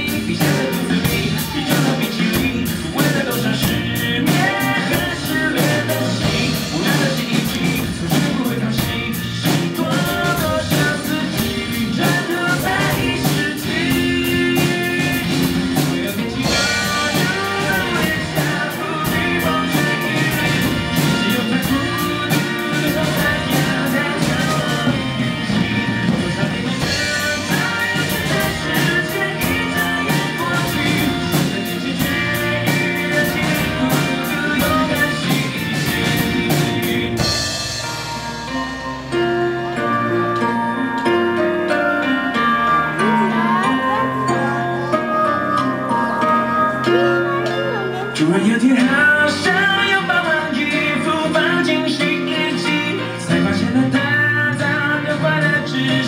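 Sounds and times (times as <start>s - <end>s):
drum kit with fast cymbal strokes: 0.0s - 39.1s
electric guitar: 0.0s - 56.0s
rock song with vocals: 0.0s - 56.0s.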